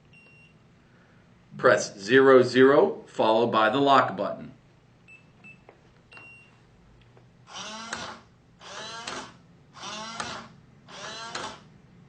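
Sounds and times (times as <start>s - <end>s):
small lock motor driving bolt: 7.5s - 11.7s.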